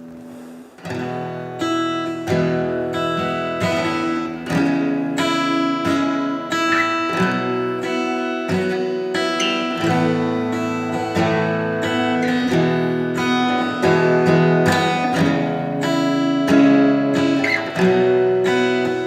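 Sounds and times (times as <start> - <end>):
acoustic guitar strumming: 0.0 - 19.0.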